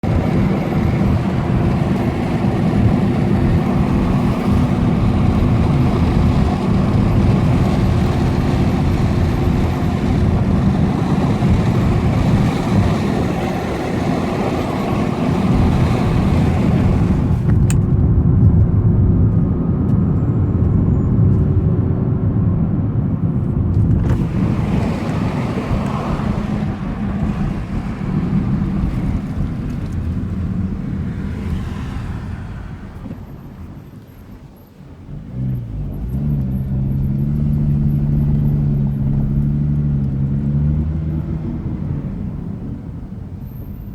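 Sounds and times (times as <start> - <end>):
car engine and tyres rumbling: 0.0 - 43.9
road hiss: 24.2 - 35.8.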